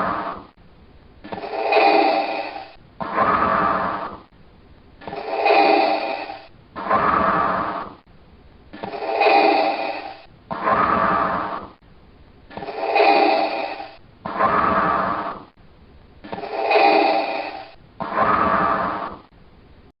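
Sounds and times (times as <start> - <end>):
mechanical hissing breathing: 1.3 - 4.3, 5.0 - 8.0, 8.8 - 11.8, 12.5 - 15.5, 16.3 - 19.3.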